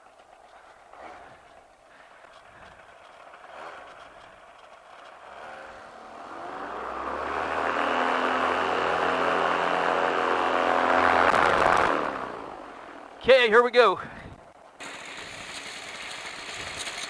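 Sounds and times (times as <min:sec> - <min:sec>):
two-stroke engine running: 0:14.8 - 0:17.0.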